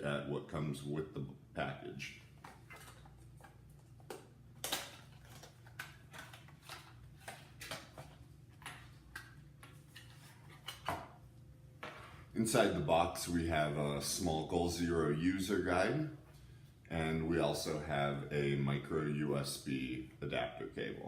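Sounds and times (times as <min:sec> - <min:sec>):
packaging clicks and rustles: 0:02.4 - 0:10.9.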